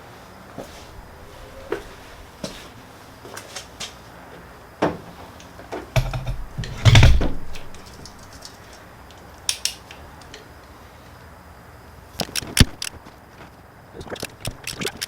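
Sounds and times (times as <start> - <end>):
heavy engine clunk: 6.0 - 8.3
metal tools clanking on engine: 6.0 - 8.8.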